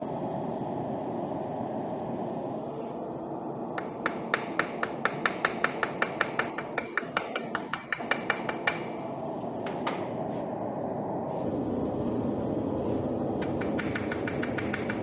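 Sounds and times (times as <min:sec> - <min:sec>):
hammer striking steel on anvil: 0:03.8 - 0:09.0.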